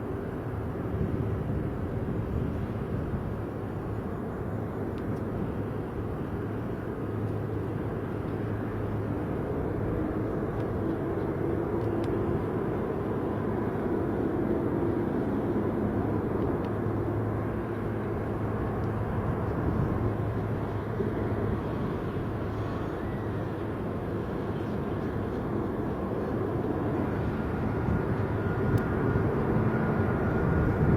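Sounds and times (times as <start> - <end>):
jet airliner engines rumbling: 0.0 - 30.9.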